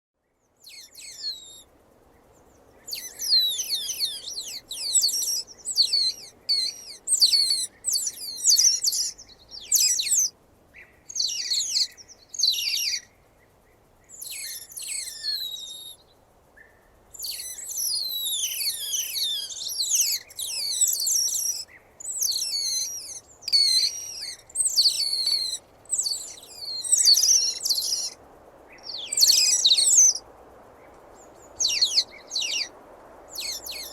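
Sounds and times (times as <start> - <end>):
otter chirping and squealing: 0.7 - 1.6, 2.9 - 10.3, 11.1 - 13.0, 14.2 - 16.0, 17.2 - 28.2, 28.9 - 30.2, 31.6 - 32.7, 33.3 - 33.9.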